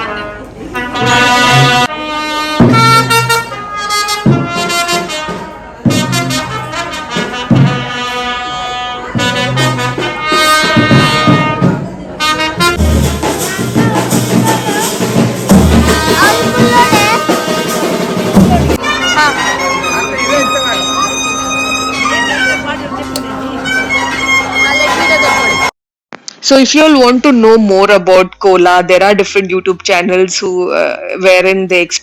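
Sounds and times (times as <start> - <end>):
wind instrument playing held notes: 0.0 - 25.7
voices: 13.2 - 25.7.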